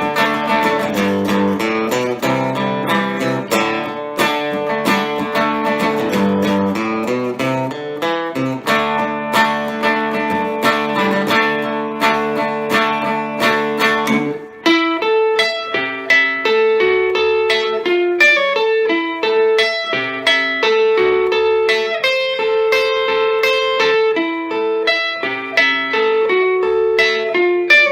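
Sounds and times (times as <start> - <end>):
electric guitar lead lines: 0.0 - 27.9
electric guitar strumming chords: 0.0 - 27.9.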